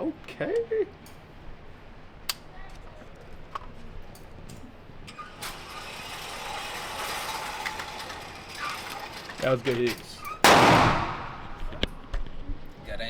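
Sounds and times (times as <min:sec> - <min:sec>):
target carrier motor whirring: 0:05.0 - 0:12.0.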